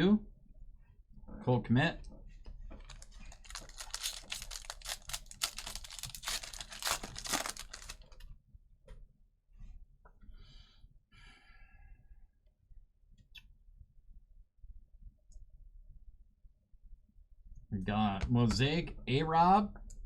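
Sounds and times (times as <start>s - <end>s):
foil wrapper crinkling: 2.8s - 8.2s.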